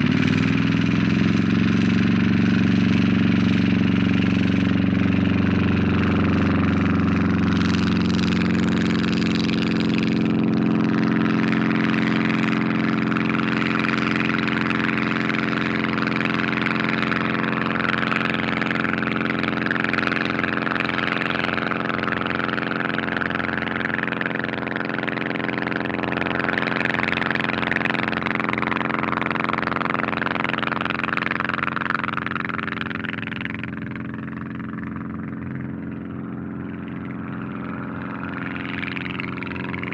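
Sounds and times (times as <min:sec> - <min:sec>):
propeller plane engine running: 0:00.0 - 0:39.9.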